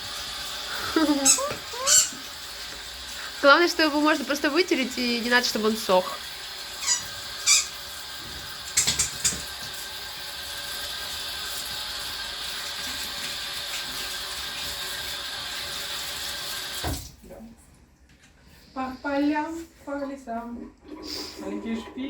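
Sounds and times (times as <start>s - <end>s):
water running from a tap: 0.0s - 17.2s
squeaky dog toy squeaks: 1.2s - 2.3s, 6.8s - 7.8s.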